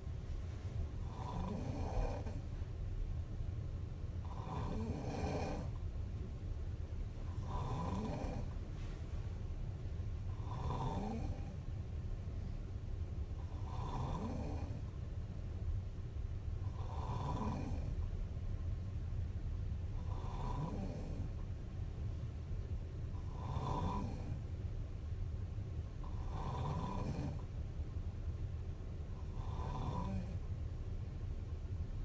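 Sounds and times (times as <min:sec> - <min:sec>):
steady low rumble: 0:00.0 - 0:32.0
woman snoring: 0:01.0 - 0:02.4, 0:04.2 - 0:05.8, 0:07.3 - 0:08.6, 0:10.3 - 0:11.6, 0:13.4 - 0:14.8, 0:16.6 - 0:18.0, 0:20.0 - 0:21.3, 0:23.1 - 0:24.4, 0:26.0 - 0:27.4, 0:29.2 - 0:30.4.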